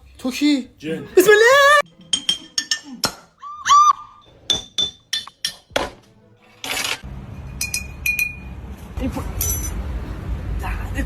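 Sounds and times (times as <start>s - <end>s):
ringing clinks of hard objects: 7.4s - 8.5s, 9.4s - 9.8s.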